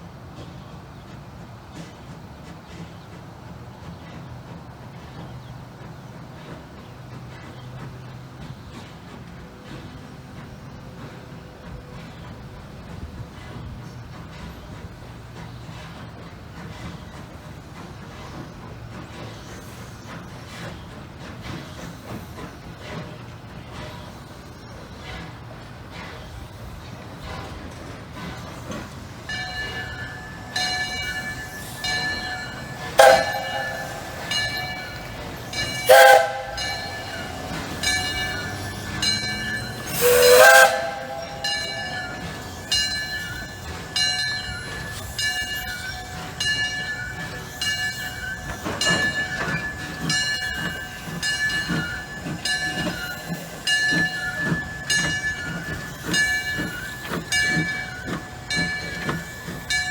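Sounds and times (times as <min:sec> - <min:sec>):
passing train beat: 0:00.0 - 0:59.9
steam locomotive whistle: 0:29.3 - 0:59.9
bell ringing: 0:41.0 - 0:50.5.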